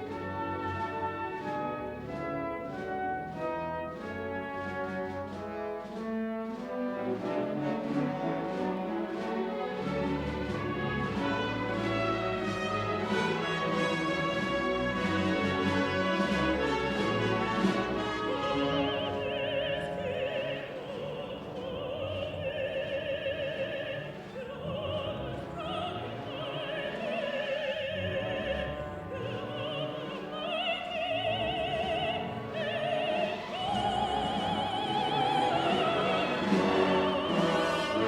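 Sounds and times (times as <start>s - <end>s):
orchestra playing: 0.0s - 38.0s
woman singing with vibrato: 18.2s - 38.0s.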